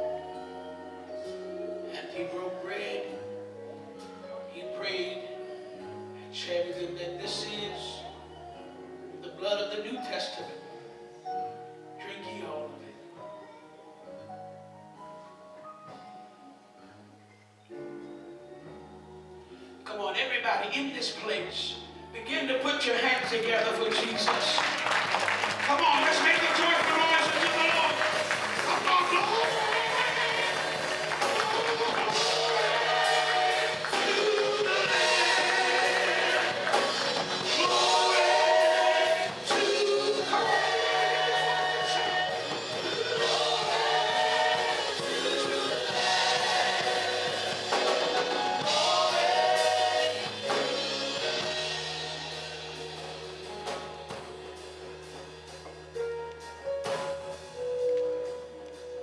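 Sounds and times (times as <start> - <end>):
gospel choir singing: 0.0 - 13.5, 21.4 - 55.8
band accompaniment: 22.9 - 59.0.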